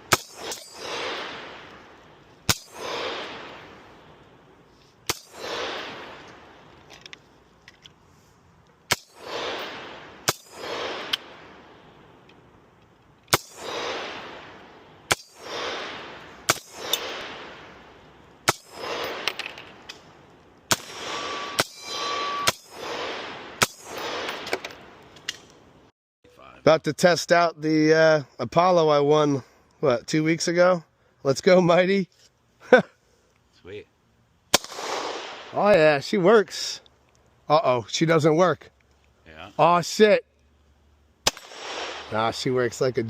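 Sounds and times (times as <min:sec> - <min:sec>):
gunshots with long echo: 0:00.0 - 0:04.2, 0:05.1 - 0:06.7, 0:08.9 - 0:11.9, 0:13.3 - 0:19.5, 0:20.7 - 0:25.0, 0:34.5 - 0:35.6, 0:41.2 - 0:42.5.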